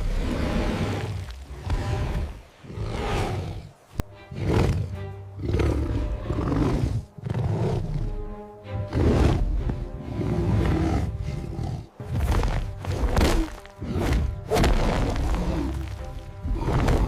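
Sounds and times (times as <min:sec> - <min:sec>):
dramatic background music: 0:04.0 - 0:17.0.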